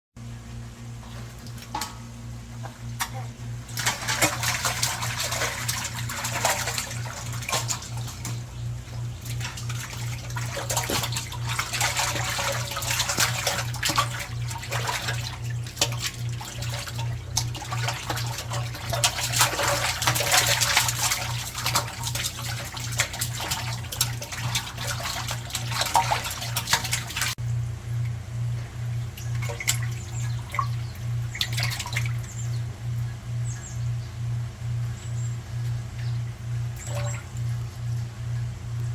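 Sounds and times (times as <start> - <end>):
water splashing and sloshing: 0.8 - 33.7, 34.6 - 38.9
pulsing low hum: 27.4 - 38.9.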